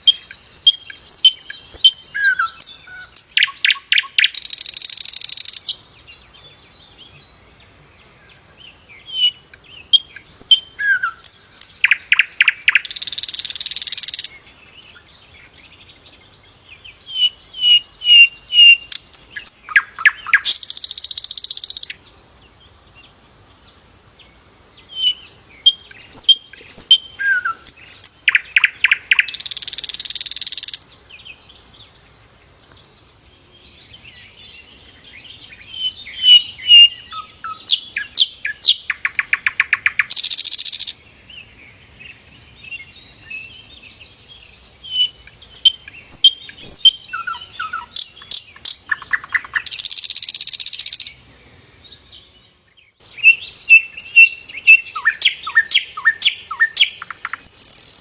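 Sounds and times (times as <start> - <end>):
bird high chirping notes: 9.0 - 15.1, 24.9 - 30.9, 42.8 - 51.2, 51.9 - 58.0.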